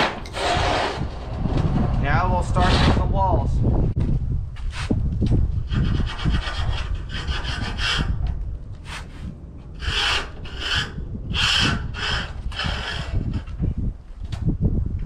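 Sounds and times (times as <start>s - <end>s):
hand tool rasping strokes: 9.8s - 13.5s.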